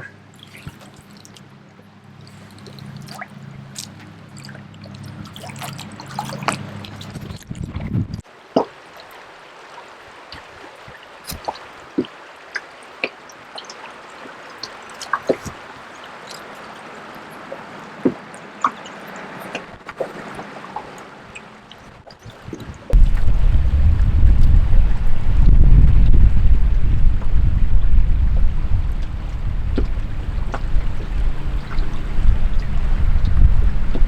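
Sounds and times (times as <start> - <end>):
water dripping and trickling: 0.4 - 1.5, 2.2 - 7.8, 8.4 - 34.0
low rumble: 23.0 - 34.0
running water hiss: 23.0 - 34.0.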